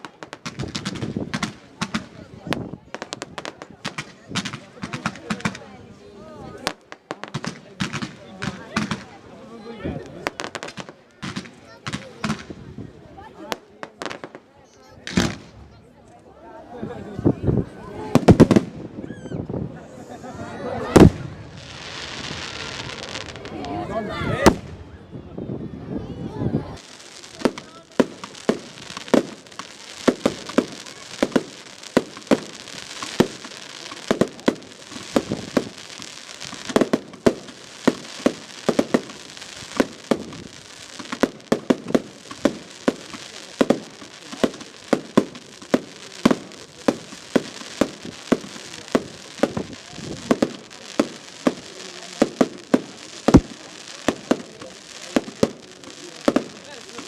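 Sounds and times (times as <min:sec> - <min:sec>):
fireworks bangs: 0:00.0 - 0:15.8, 0:17.2 - 0:20.2, 0:20.8 - 0:57.0
crackling hiss: 0:20.9 - 0:23.8, 0:26.8 - 0:57.0.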